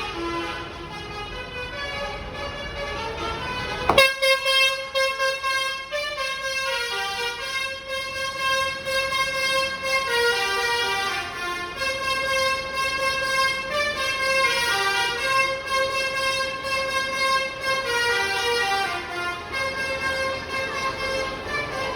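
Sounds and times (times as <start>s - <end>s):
multi-tone bus air horn tune: 0.0s - 21.9s.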